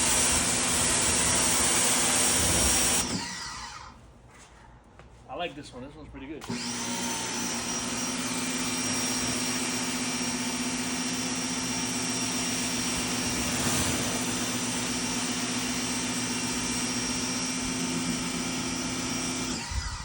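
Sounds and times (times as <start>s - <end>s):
pressure washer motor humming: 0.0s - 3.9s, 6.4s - 19.9s
water spray hissing: 12.5s - 16.0s.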